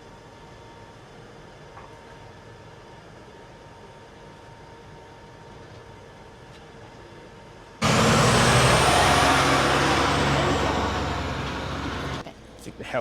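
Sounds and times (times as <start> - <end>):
high whine: 7.8 - 12.2
diesel engine running: 7.8 - 12.3.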